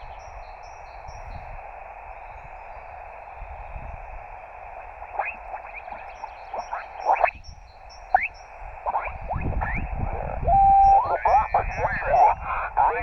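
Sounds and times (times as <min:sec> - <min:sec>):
radio band hiss: 0:00.0 - 0:13.0
faint rapid peeping: 0:04.2 - 0:13.0
sliding chirping whistles: 0:10.5 - 0:12.2.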